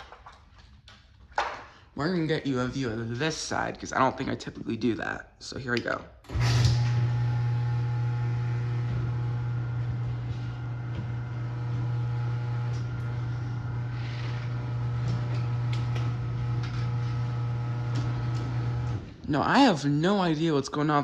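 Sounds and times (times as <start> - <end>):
garage door motor humming: 6.2 - 19.3.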